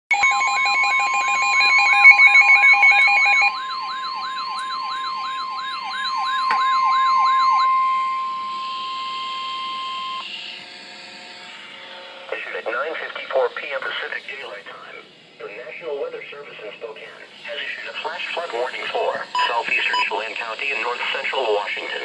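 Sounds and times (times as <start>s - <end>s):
steady high alert tone: 0.1s - 10.2s
rapid beeping: 0.2s - 8.3s.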